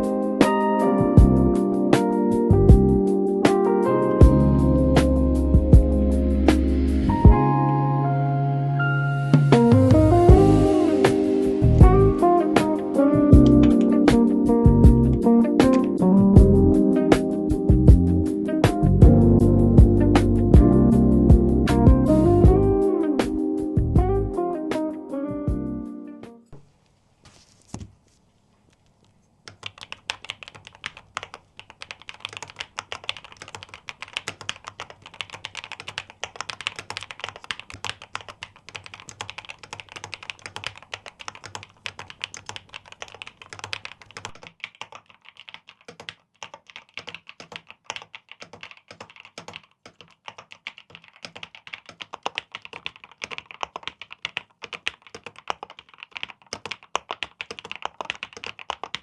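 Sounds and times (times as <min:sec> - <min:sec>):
mechanical keyboard typing: 0:10.4 - 0:16.3, 0:29.4 - 0:59.0.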